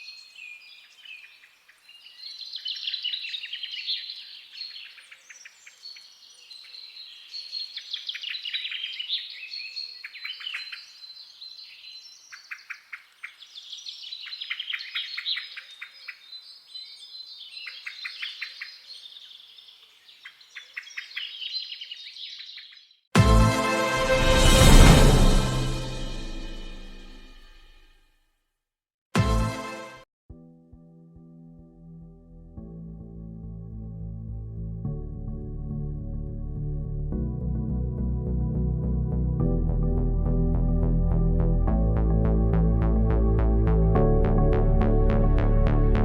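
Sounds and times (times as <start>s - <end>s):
birds chirping and singing: 0.0s - 22.9s
loud music: 23.2s - 27.7s, 29.2s - 30.0s.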